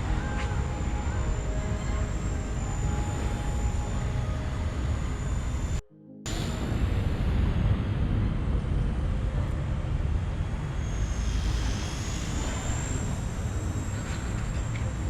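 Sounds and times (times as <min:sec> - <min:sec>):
rc helicopter rotor whine: 0:00.0 - 0:05.8, 0:10.2 - 0:15.0
low rumble: 0:00.0 - 0:15.0.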